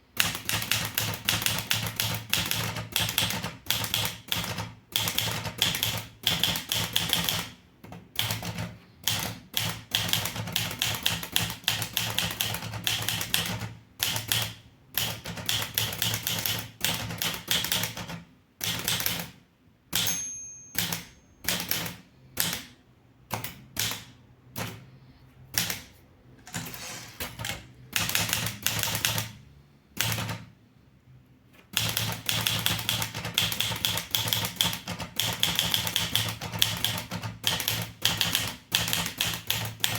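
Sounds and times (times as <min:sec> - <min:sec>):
typewriter key strikes: 0:19.9 - 0:22.7
faint ringing tone: 0:20.0 - 0:21.5.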